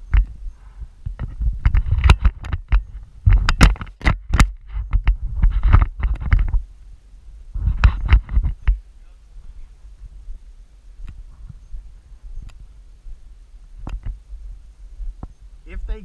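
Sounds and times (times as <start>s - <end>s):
thumps and rustling on microphone: 0.0s - 6.7s, 7.4s - 8.8s, 9.4s - 15.6s
sharp clicks and scrapes: 1.0s - 6.6s, 7.6s - 8.8s.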